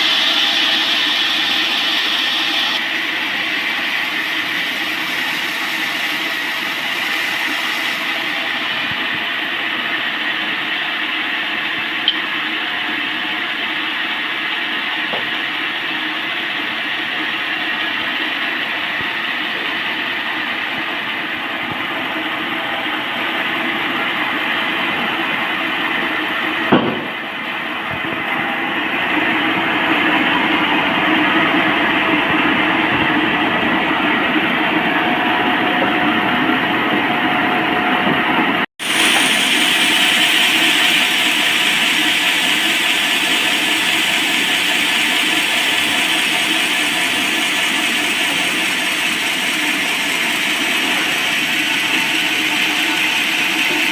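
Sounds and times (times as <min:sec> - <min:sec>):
band sawmill sawing log: 0:00.0 - 0:10.1, 0:38.8 - 0:53.9
sharp knock: 0:26.7 - 0:27.2.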